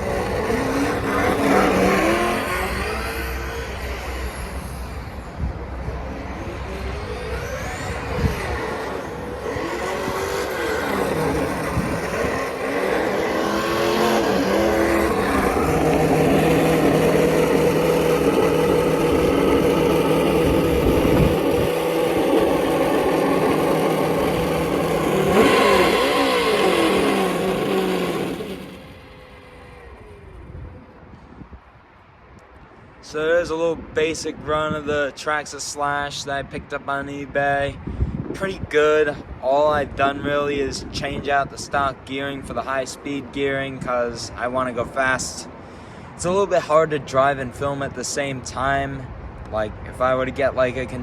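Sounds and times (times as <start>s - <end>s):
simulated engine sound revving: 0.0s - 5.2s, 6.0s - 30.9s.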